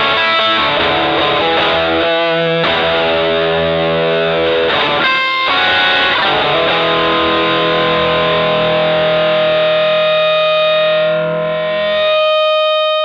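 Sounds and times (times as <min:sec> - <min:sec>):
electric guitar chords: 0:00.0 - 0:13.0.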